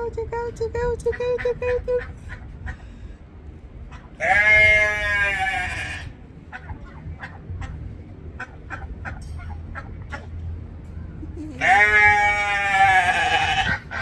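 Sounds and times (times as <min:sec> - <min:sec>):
farm animal bleating: 0:04.2 - 0:06.2, 0:11.6 - 0:13.9.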